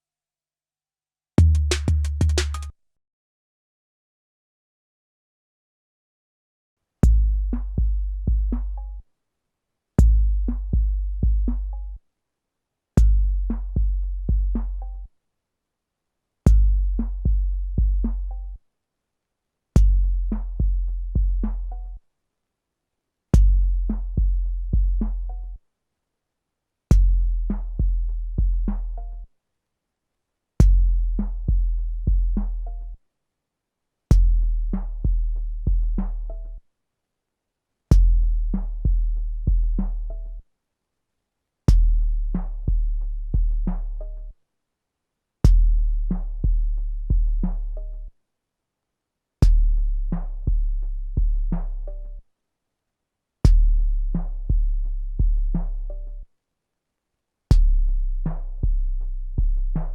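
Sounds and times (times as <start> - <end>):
sampler drum phrase: 1.4 - 2.7.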